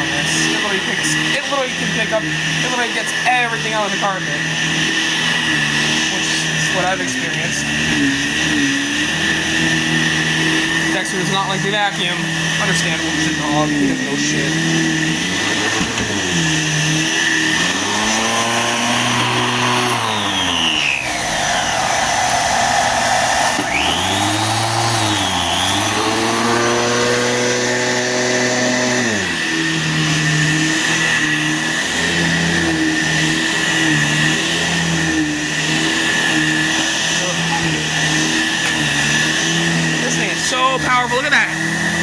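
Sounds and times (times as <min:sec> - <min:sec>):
upright vacuum cleaner on carpet: 0:00.0 - 0:42.0.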